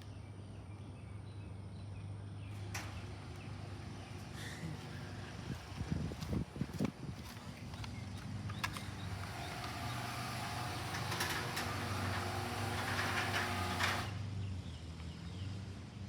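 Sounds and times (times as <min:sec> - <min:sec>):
garage door opener motor whirring: 0:02.5 - 0:05.9, 0:08.5 - 0:14.4.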